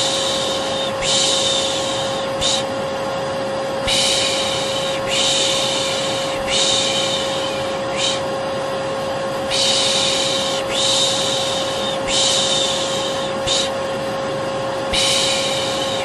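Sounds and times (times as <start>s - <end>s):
person shushing: 0.0s - 2.8s, 3.8s - 8.3s, 9.5s - 13.8s, 14.9s - 16.0s
vacuum cleaner running: 0.0s - 16.0s.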